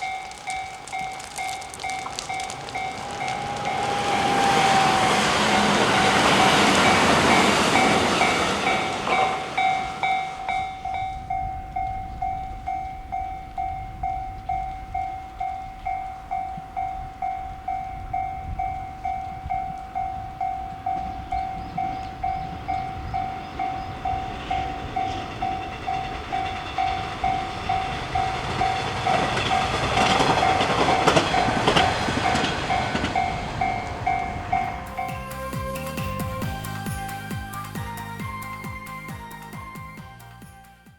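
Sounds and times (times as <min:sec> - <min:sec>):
level crossing alarm ringing: 0:00.0 - 0:35.8
train wheel clatter: 0:00.0 - 0:38.7
train running past: 0:00.0 - 0:40.9.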